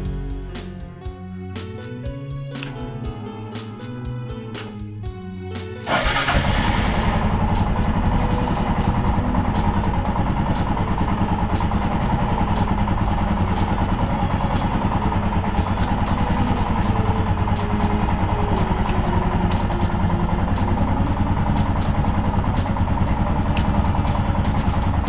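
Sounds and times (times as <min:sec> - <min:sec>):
music: 0:00.0 - 0:25.0
motorcycle engine running: 0:05.2 - 0:25.0.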